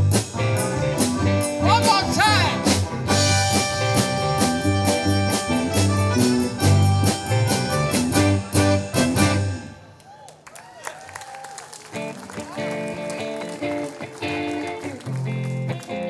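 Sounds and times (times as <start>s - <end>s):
drum hits: 0.0s - 9.5s
steady bass line: 0.0s - 9.7s
live band playing rhythm and blues: 0.0s - 10.0s, 11.9s - 16.0s.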